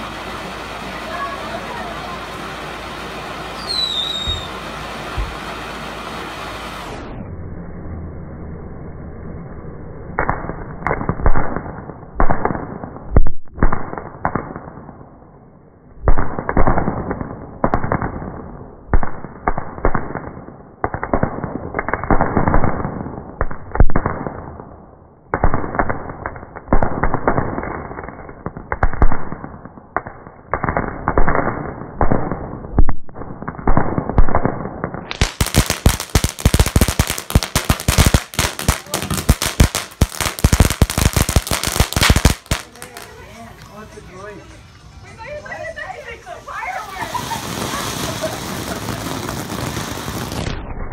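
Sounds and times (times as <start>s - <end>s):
firecracker crackling pops: 0.0s - 7.1s, 10.2s - 43.9s, 46.8s - 50.9s
fireworks bangs: 0.0s - 7.2s, 10.1s - 50.9s.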